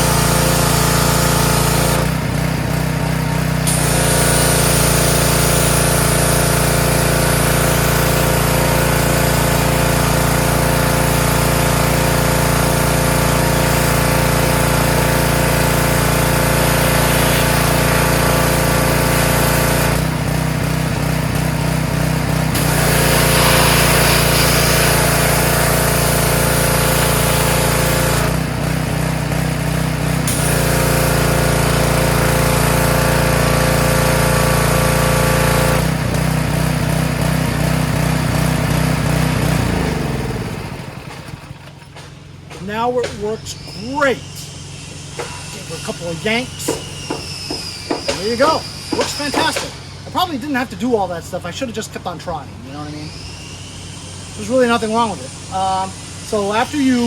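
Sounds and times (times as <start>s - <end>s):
small gasoline engine running: 0.0s - 57.0s
high hiss: 12.4s - 20.0s, 22.5s - 28.4s, 42.7s - 57.0s.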